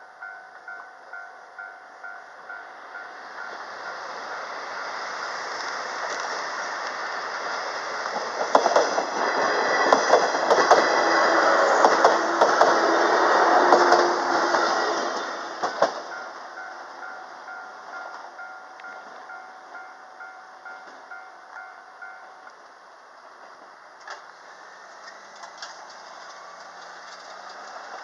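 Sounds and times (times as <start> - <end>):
crossing alarm bell ringing: 0.0 - 5.3, 6.5 - 8.5, 14.6 - 22.6
train rumble: 0.0 - 28.0
wheels clacking over rail joints: 0.6 - 19.0, 24.9 - 28.0.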